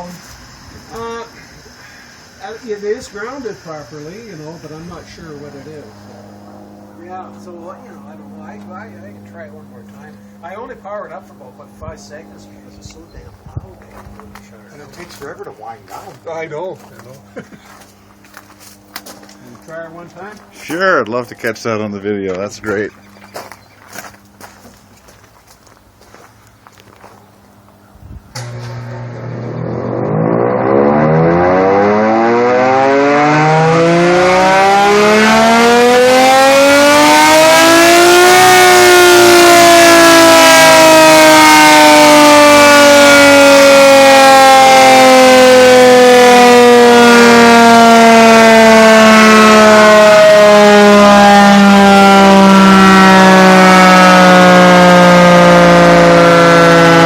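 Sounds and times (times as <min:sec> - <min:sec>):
air raid siren wailing: 0:02.4 - 0:09.8, 0:28.3 - 0:57.0.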